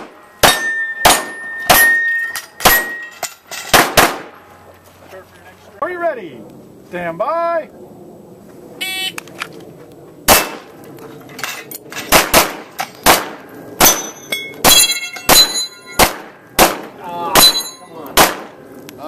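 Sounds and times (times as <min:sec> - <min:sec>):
pistol shots: 0:00.0 - 0:03.0, 0:03.7 - 0:04.4, 0:10.3 - 0:10.7, 0:12.0 - 0:18.6
steel targets clanging: 0:00.4 - 0:03.9, 0:13.8 - 0:16.1, 0:17.3 - 0:18.0.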